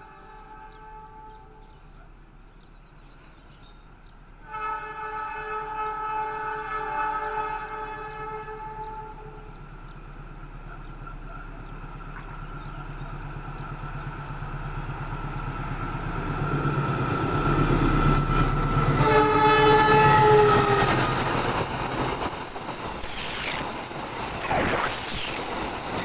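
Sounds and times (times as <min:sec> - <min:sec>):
locomotive horn blast: 0:04.4 - 0:09.4, 0:18.8 - 0:21.1
rumbling train wheels: 0:07.2 - 0:24.4.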